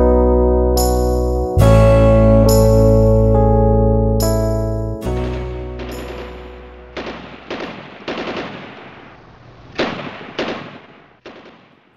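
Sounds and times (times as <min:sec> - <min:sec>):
music track: 0:00.0 - 0:07.2
echoing gunshots: 0:05.2 - 0:11.9
automatic gunfire bursts: 0:07.0 - 0:09.1, 0:09.7 - 0:11.9.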